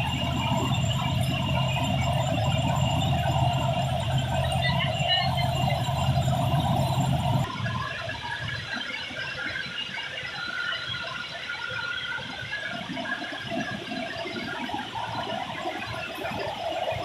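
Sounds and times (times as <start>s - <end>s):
harvesting machine running: 0.0s - 7.5s.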